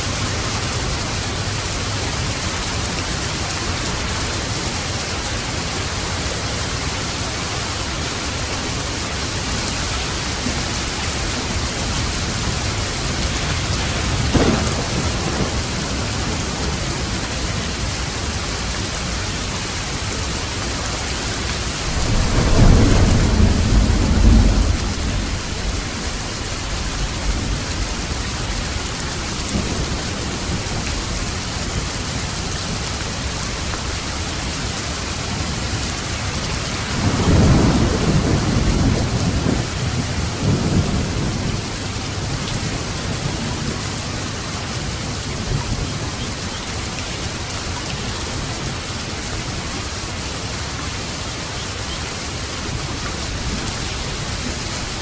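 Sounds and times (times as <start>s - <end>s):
low rumble of thunder: 0.0s - 50.7s, 52.4s - 55.0s
heavy rain falling: 0.0s - 55.0s
thunder crack: 13.1s - 17.1s, 21.8s - 28.2s, 36.8s - 41.5s.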